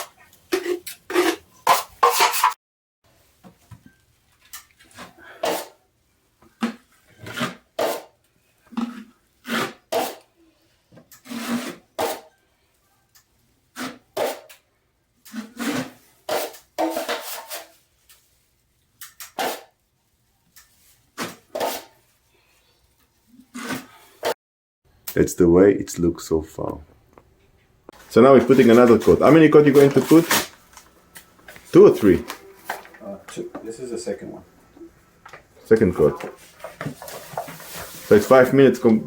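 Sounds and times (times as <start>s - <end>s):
taping knife scraping drywall: 6.6s - 8.1s, 8.8s - 10.3s, 11.2s - 12.3s, 13.7s - 14.6s, 15.3s - 17.7s, 19.2s - 19.8s, 21.2s - 22.0s, 23.5s - 24.3s.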